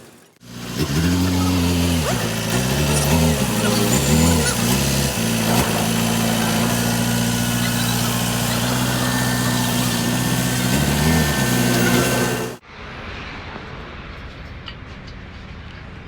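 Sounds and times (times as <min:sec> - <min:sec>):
diesel engine running: 0:00.0 - 0:12.6.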